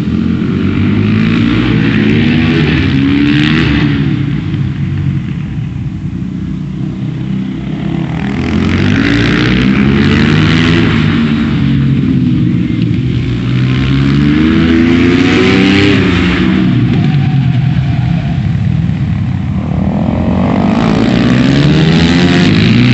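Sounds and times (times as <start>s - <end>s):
motorcycle engines revving past: 7.0s - 22.9s.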